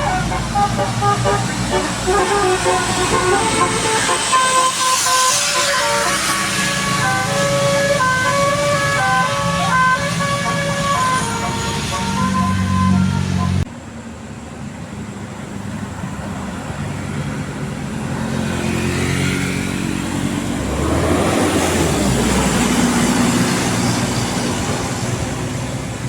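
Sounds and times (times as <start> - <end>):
multi-tone bus horn: 0.0 - 13.7
bus engine passing: 0.0 - 26.0.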